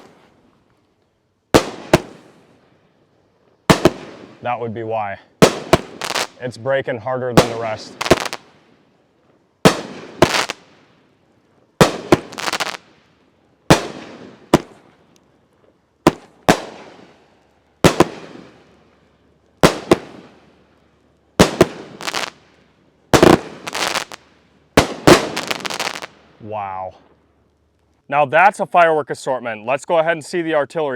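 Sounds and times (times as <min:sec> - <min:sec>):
firework launch pops: 0:00.0 - 0:00.3, 0:01.6 - 0:02.4, 0:03.7 - 0:04.4, 0:09.6 - 0:10.9, 0:13.7 - 0:14.8, 0:23.1 - 0:26.2.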